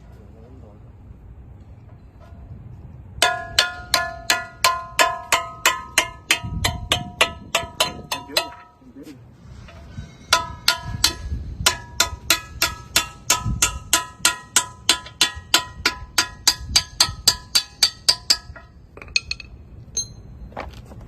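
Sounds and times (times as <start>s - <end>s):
hammer striking steel pin: 3.2s - 8.8s, 10.3s - 20.2s.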